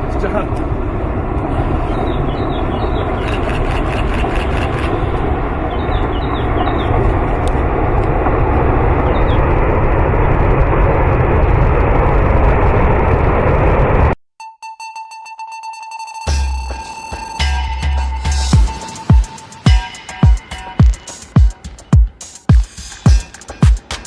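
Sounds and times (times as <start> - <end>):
landslide rumbling: 0.0 - 14.2.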